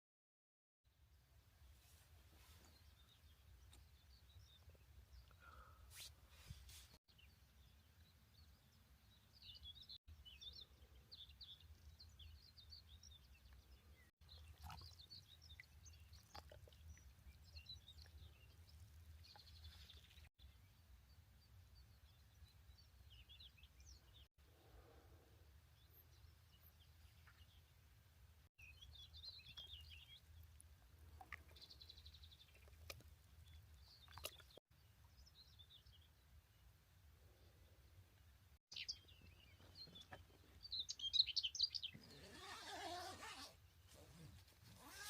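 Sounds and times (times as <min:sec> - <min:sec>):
faint bird chirps and calls: 0:38.7 - 0:45.0.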